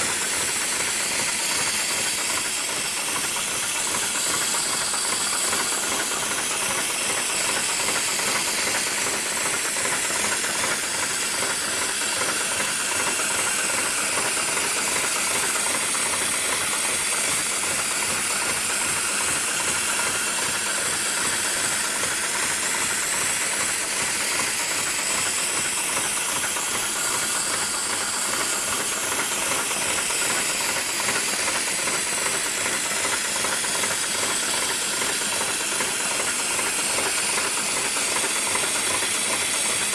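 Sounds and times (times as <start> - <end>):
industrial sewing machine stitching: 0.0 - 39.9.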